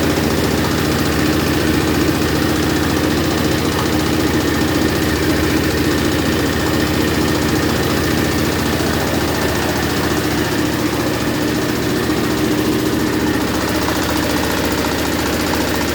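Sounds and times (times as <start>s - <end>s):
diesel engine running: 0.0s - 15.9s.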